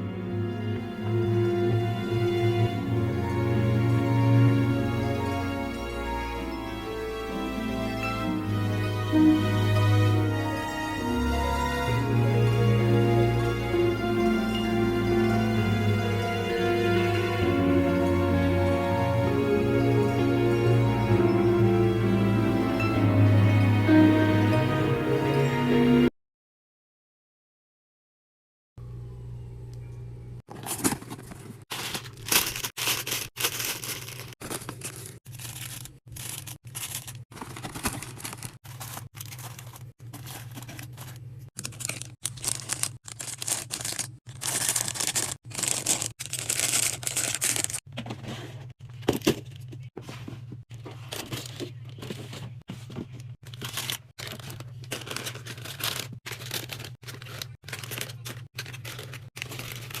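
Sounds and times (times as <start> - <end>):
plastic packaging tearing and crinkling: 30.5 - 47.9, 53.4 - 60.0.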